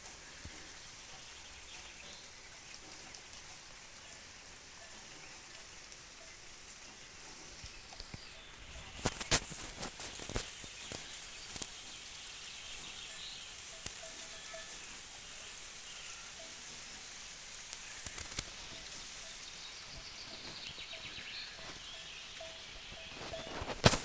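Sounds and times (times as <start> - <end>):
steady rain hiss: 0.0 - 24.0
water drips: 0.0 - 24.0
faint high bird chirps: 10.6 - 16.6, 17.8 - 23.8.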